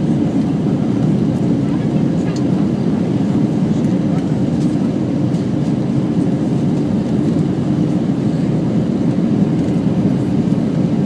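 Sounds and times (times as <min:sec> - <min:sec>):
jet engines in airliner cabin: 0:00.0 - 0:11.0.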